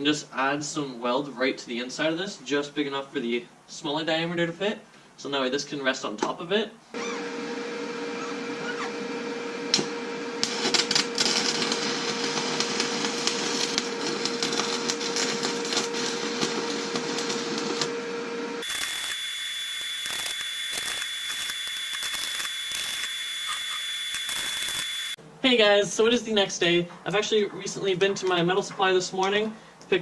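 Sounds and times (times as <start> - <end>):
welding arc crackling: 9.7 - 18.0, 18.6 - 25.2
rough noise with high whine: 9.7 - 26.1.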